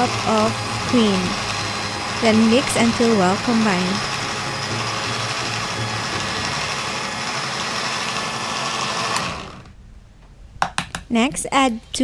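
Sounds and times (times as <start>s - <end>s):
electric hand mixer running: 0.0s - 9.8s.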